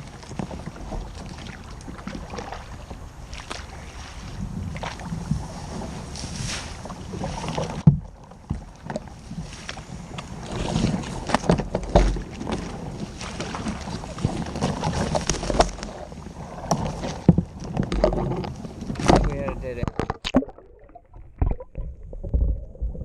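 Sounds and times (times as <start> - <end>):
water splashing: 0.0 - 23.0
paddle knocking on hull: 0.2 - 6.0, 6.8 - 9.1, 10.3 - 20.4.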